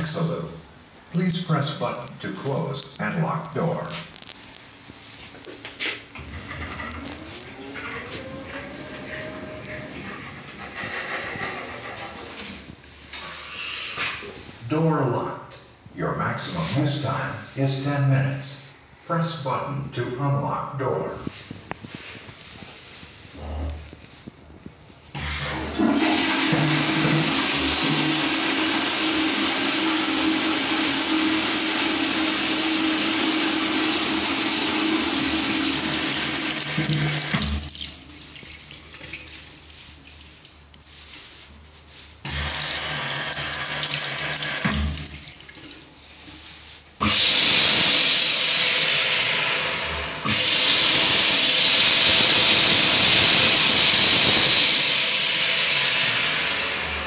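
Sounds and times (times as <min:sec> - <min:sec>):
toilet water running: 0:25.2 - 0:40.6, 0:42.3 - 0:46.0, 0:47.0 - 0:57.0
loud rushing hisses: 0:47.0 - 0:57.0.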